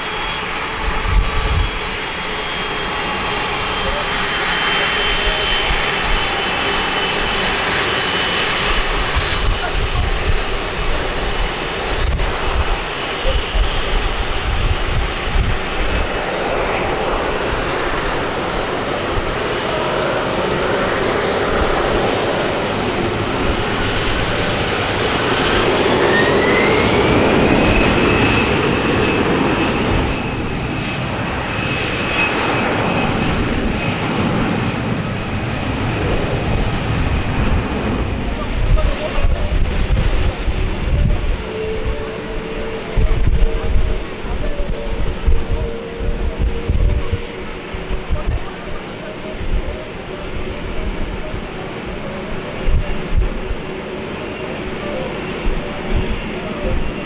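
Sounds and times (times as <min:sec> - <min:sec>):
jet engines rumbling and whining: 0:00.0 - 0:57.0.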